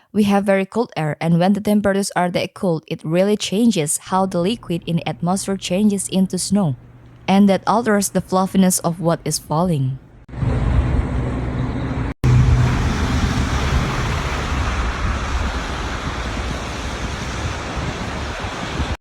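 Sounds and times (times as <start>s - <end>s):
street noise low rumble: 4.2s - 8.3s, 8.9s - 19.0s.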